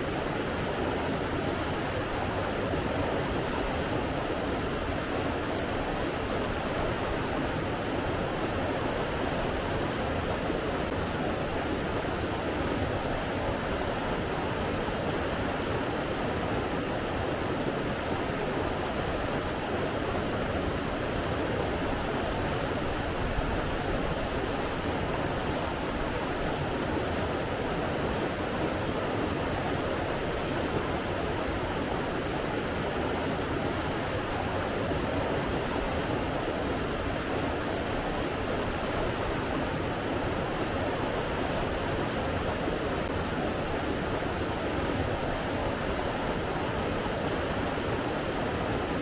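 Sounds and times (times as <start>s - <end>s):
running water rushing: 0.0s - 49.0s.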